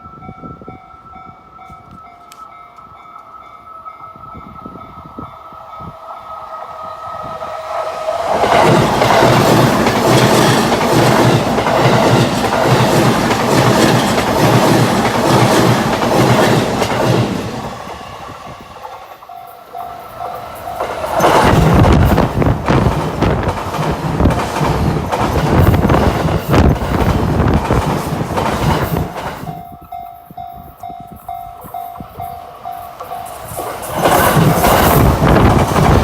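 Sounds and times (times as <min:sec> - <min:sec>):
train wheels clattering on rails: 0:08.1 - 0:36.0.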